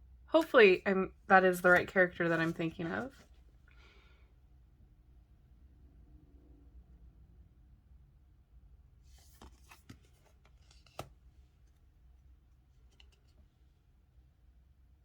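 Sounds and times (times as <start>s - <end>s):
card sliding on card: 1.6s - 3.2s.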